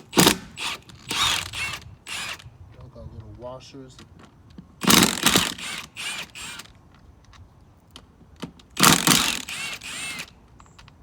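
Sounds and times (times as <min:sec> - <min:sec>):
power tool spinning bolts: 0:00.0 - 0:02.5, 0:04.8 - 0:06.7, 0:08.8 - 0:10.4.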